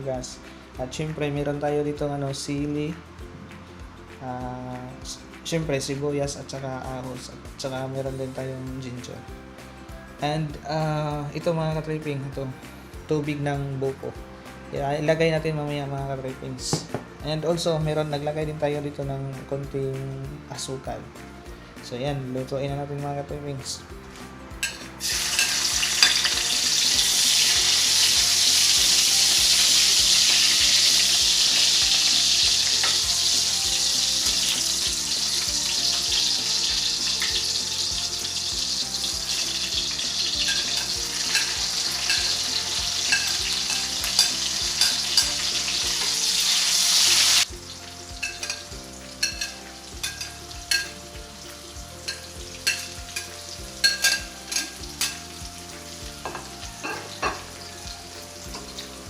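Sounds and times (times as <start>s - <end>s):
food sizzling in a pan: 24.2s - 59.0s.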